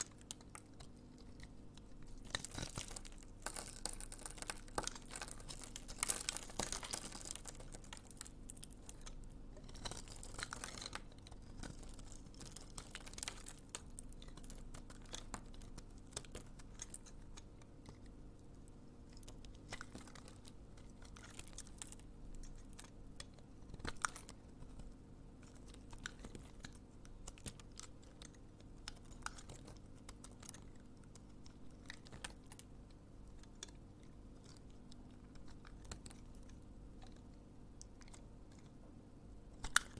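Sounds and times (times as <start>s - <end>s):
knife crunching through soap: 0.0s - 18.2s, 39.6s - 39.9s.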